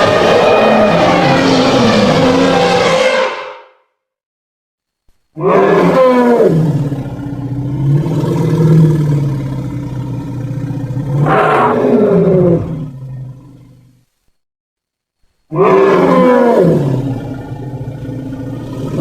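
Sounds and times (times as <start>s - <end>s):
elephant roaring: 5.4s - 14.0s, 15.5s - 19.0s.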